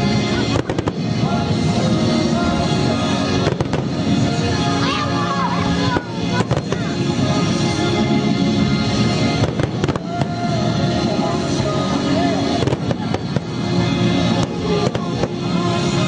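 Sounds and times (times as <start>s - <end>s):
loud music: 0.0s - 16.0s
fireworks sharp bangs: 0.4s - 1.2s, 3.4s - 4.1s, 5.8s - 6.9s, 9.4s - 10.4s, 12.5s - 13.6s, 14.3s - 15.5s.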